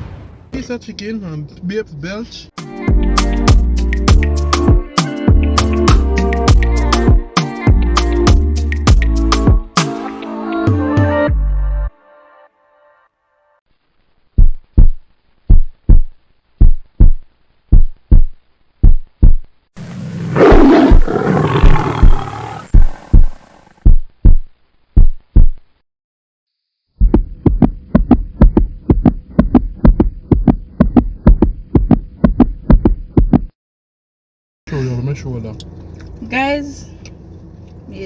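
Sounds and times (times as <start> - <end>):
fast electronic beat: 14.4 - 19.4, 27.0 - 33.5
heartbeat-like double thump: 14.4 - 19.5, 20.9 - 25.6, 27.0 - 33.6
loud roar: 20.0 - 23.7.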